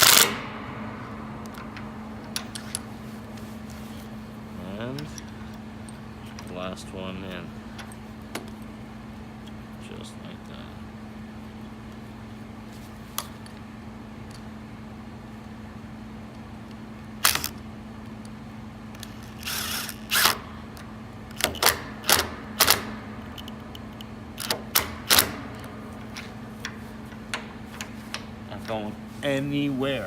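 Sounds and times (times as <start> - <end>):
steady low hum: 0.0 - 30.0
sharp clicks and knocks: 20.2 - 28.8.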